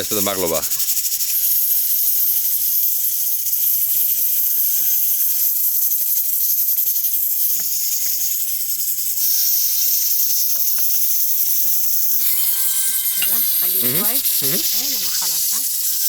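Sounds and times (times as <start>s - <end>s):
steam hissing: 0.0s - 16.0s
pots and utensils clicking: 11.7s - 16.0s.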